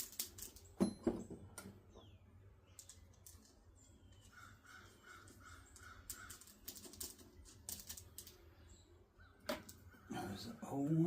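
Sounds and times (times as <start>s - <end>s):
faint bird calling: 4.0s - 6.9s, 8.5s - 10.8s.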